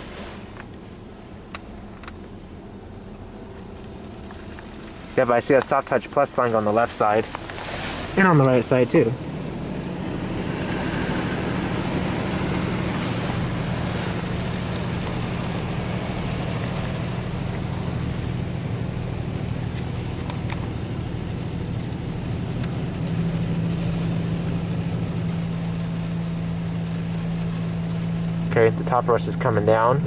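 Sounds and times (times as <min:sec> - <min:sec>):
car wash machinery hum: 0:00.0 - 0:30.0
spraying water hiss: 0:07.2 - 0:27.2.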